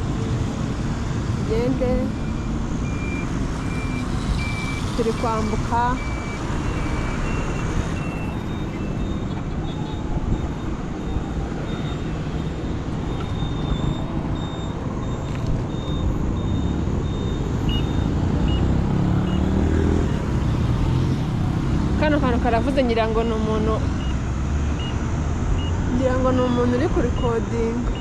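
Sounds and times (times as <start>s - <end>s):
road traffic rumble: 0.0s - 28.0s
vehicle pulling away: 2.2s - 9.3s, 13.9s - 22.9s.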